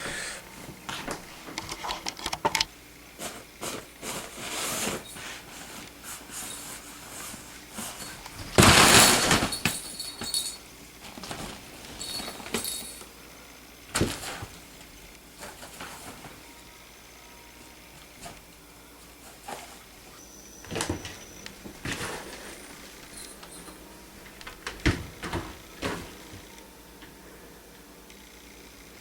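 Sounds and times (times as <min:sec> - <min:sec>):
scuffling clatter: 0:03.2 - 0:13.1, 0:13.9 - 0:16.4, 0:19.0 - 0:26.4.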